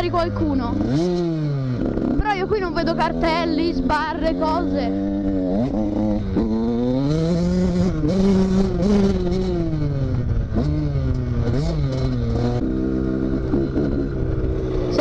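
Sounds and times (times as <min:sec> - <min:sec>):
two-stroke motorcycle engine revving: 0:00.0 - 0:15.0.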